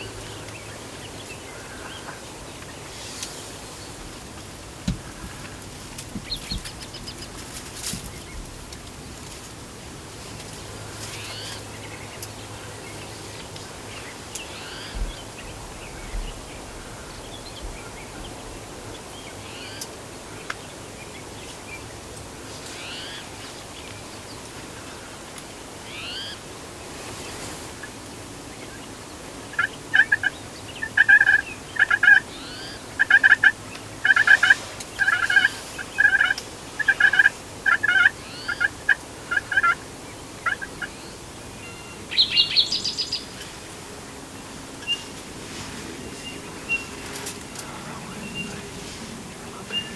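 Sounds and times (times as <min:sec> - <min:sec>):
turkeys gobbling: 0:29.4 - 0:41.0.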